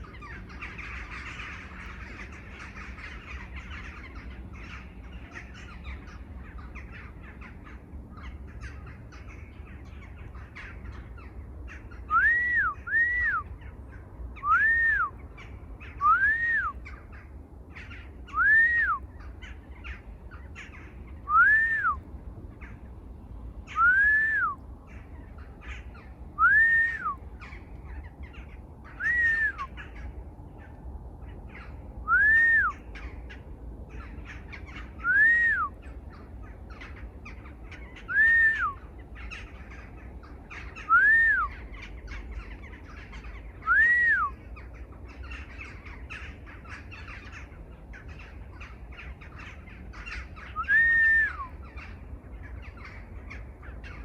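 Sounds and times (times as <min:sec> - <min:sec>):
chorus of birds chirping: 0:00.0 - 0:54.0
bird call rising and falling: 0:09.9 - 0:13.7, 0:14.3 - 0:17.1, 0:17.7 - 0:22.9, 0:23.6 - 0:54.0.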